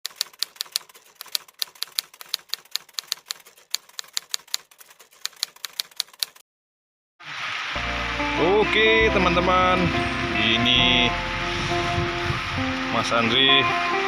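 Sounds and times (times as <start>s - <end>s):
typewriter keys clacking: 0.0s - 6.4s.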